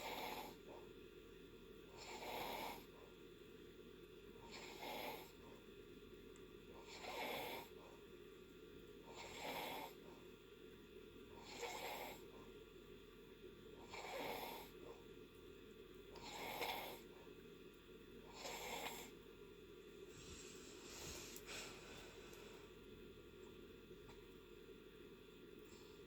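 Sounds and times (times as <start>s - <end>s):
faint breathy snoring: 0.0s - 0.9s, 1.9s - 3.1s, 4.4s - 5.6s, 6.7s - 8.0s, 9.0s - 10.2s, 11.3s - 12.4s, 13.7s - 15.0s, 16.1s - 17.3s, 18.2s - 19.2s.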